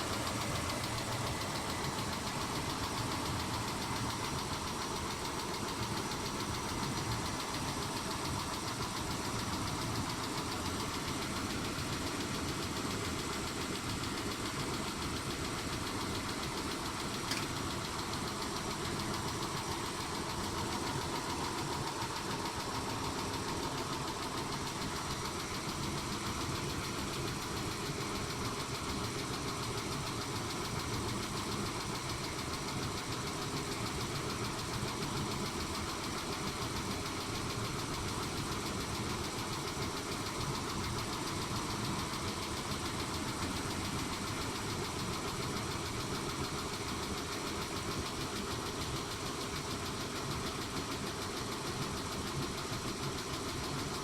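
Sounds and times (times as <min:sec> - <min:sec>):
car engine idling with ticking: 0:00.0 - 0:54.0
sharp click: 0:17.3 - 0:17.5.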